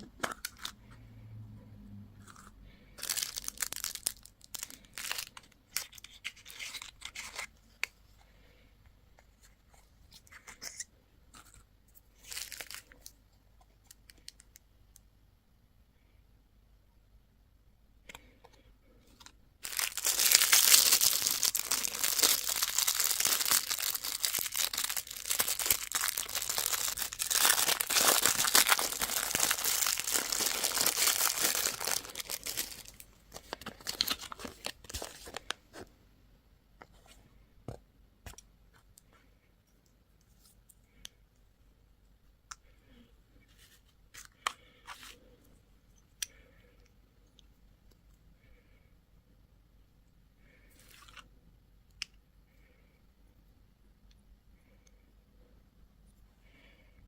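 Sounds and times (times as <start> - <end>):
candy packaging crinkling: 0.0 - 0.8, 2.2 - 7.9, 10.1 - 14.6, 19.1 - 35.9.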